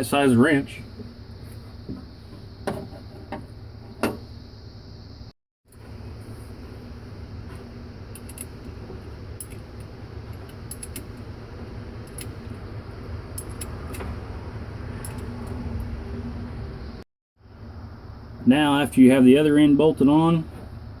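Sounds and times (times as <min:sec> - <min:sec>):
steady low rumble: 0:06.0 - 0:17.0
wrench clinking on metal bolts: 0:08.1 - 0:08.6, 0:09.4 - 0:11.2, 0:13.4 - 0:14.1.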